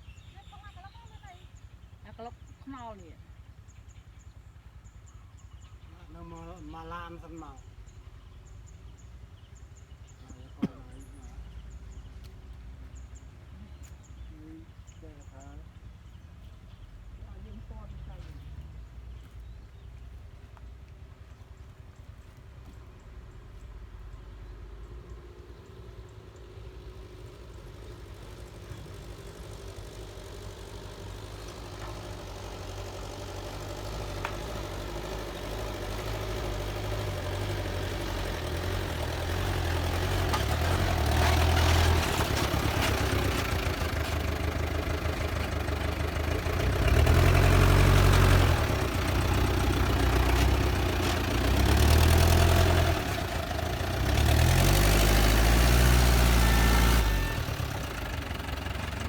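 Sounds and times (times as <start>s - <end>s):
heavy machine engine revving: 26.6s - 59.0s.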